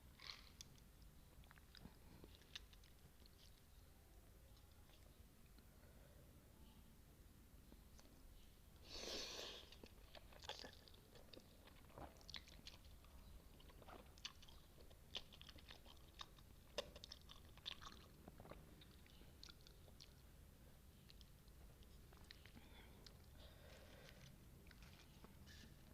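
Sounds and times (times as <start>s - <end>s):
wet chewing clicks: 9.8s - 20.2s.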